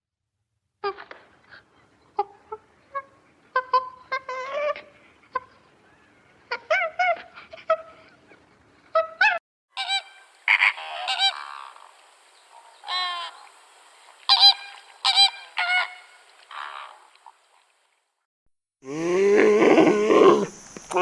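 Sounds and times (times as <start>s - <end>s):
geese honking: 9.8s - 17.4s.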